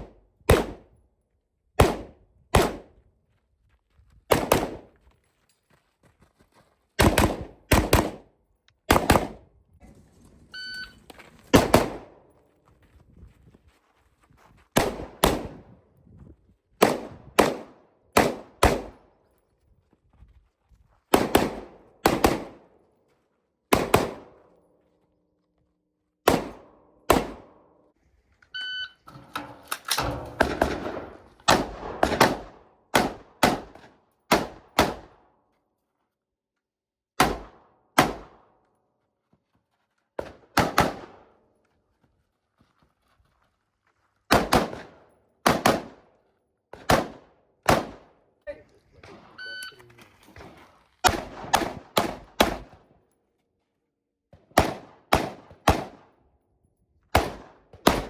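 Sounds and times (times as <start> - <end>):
rifle shots: 0.5 - 0.9, 1.8 - 2.9, 4.3 - 4.9, 7.0 - 8.3, 8.9 - 9.5, 11.5 - 12.2, 14.8 - 15.7, 16.8 - 19.0, 21.1 - 22.7, 23.7 - 24.4, 26.2 - 27.6, 29.3 - 35.2, 37.2 - 38.4, 40.6 - 41.3, 44.3 - 46.0, 46.8 - 48.1, 51.0 - 52.8, 54.6 - 56.1, 57.1 - 58.0
brief ringing tone: 10.5 - 11.0, 28.6 - 29.1, 49.4 - 49.8.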